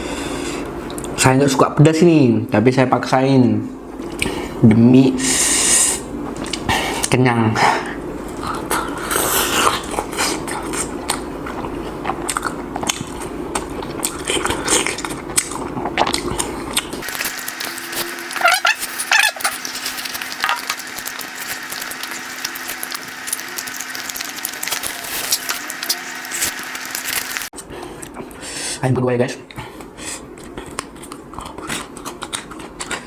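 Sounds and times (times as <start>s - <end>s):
steady hiss with low hum: 0.0s - 33.0s
biting and chewing food: 8.3s - 28.2s, 30.4s - 33.0s.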